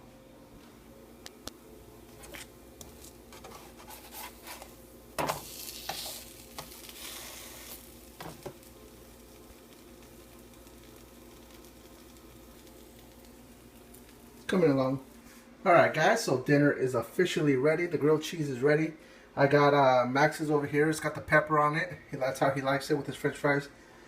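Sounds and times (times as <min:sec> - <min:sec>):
sizzling: 0:01.2 - 0:16.3.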